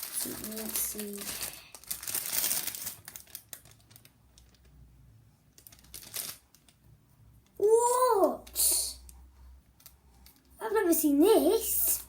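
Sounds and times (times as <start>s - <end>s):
plastic wrapper crinkling: 0.0s - 6.9s, 8.1s - 12.0s.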